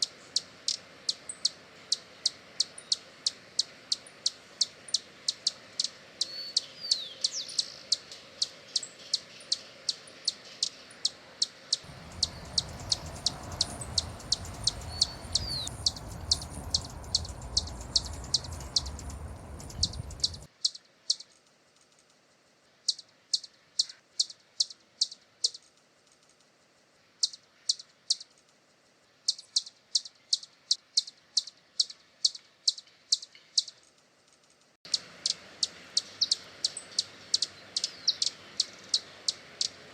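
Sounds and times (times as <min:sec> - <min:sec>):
hummingbird chip calls: 0:11.8 - 0:20.5, 0:34.9 - 0:39.8
low rumble: 0:11.9 - 0:20.5.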